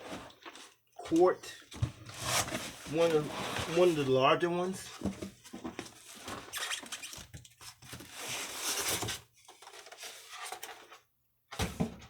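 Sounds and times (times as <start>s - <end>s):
packaging rustling: 2.0s - 4.1s, 5.4s - 11.0s.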